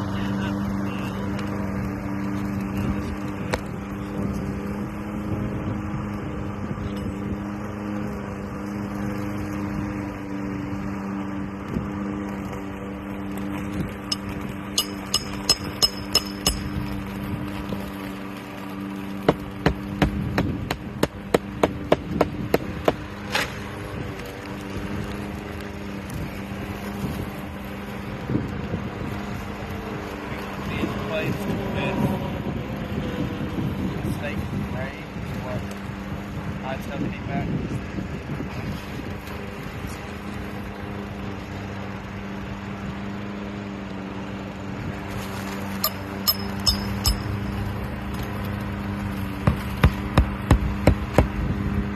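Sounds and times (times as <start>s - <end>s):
hammer driving nails into shingles: 14.8s - 16.7s.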